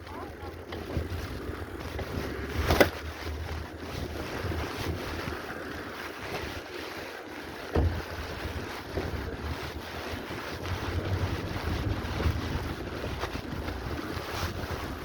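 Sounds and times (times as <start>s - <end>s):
wind buffeting microphone: 0.0s - 15.0s
steady low rumble: 8.9s - 15.0s.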